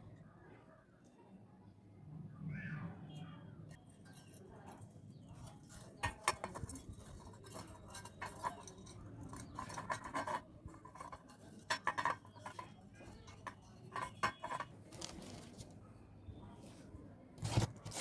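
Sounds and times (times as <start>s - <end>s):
small metal parts clinking: 3.9s - 15.7s.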